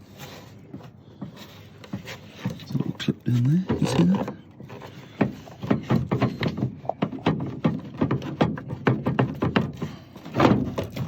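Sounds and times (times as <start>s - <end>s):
hard plastic clicking and knocking: 3.6s - 11.0s.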